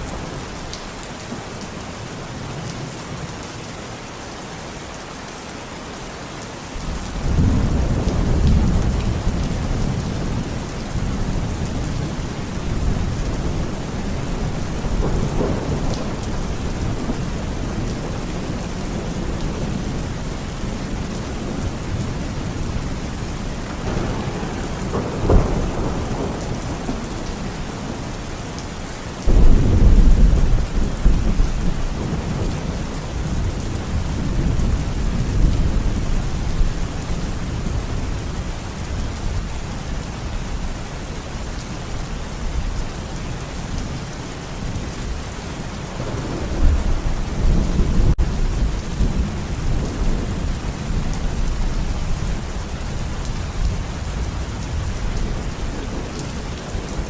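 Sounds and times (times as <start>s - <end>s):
heavy rain hissing: 3.9s - 57.0s
thunder rumbling: 7.0s - 28.5s, 29.2s - 38.2s, 44.6s - 52.7s.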